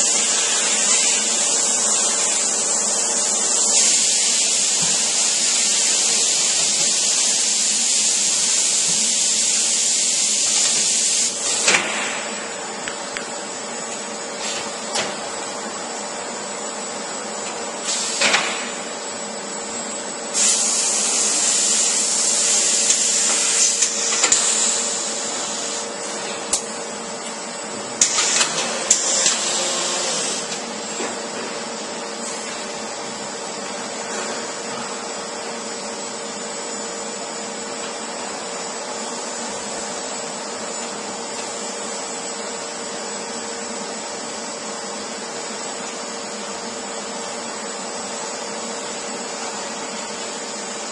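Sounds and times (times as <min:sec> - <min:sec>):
loud hissing rush: 0:00.0 - 0:12.4, 0:20.3 - 0:26.0
machining centre humming: 0:00.0 - 0:50.9.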